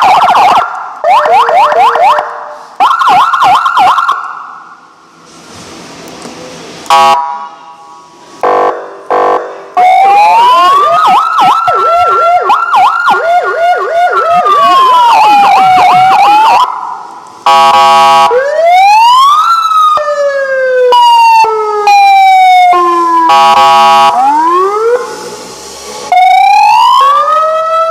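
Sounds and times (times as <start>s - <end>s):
electronic siren wail and yelp: 0.0s - 4.3s, 9.8s - 16.8s, 17.5s - 25.3s, 26.1s - 27.9s
buzzy siren horn blasts: 6.9s - 9.6s, 17.5s - 18.4s, 22.9s - 27.4s.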